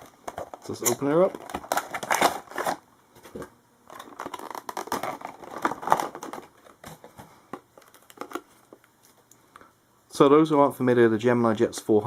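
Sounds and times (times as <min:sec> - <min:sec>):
packaging rustling and crinkling: 0:00.0 - 0:09.3.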